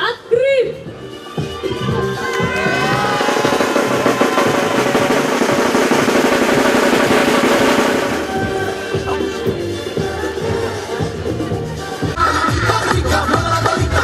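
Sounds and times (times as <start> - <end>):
music: 0.0 - 14.0
snare drum roll: 2.6 - 8.7.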